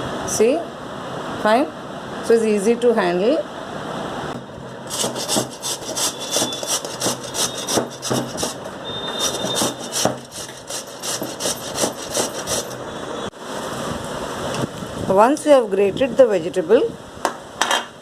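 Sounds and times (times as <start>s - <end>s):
gourd rasping on hand grater: 4.9s - 12.8s.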